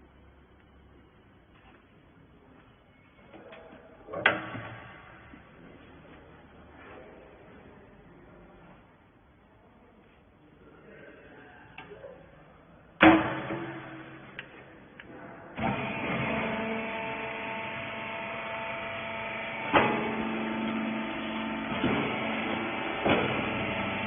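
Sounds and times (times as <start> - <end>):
loud clunk: 13.0 - 14.6, 19.7 - 20.8, 21.6 - 23.8
hydraulic motor and pump running: 13.0 - 24.0.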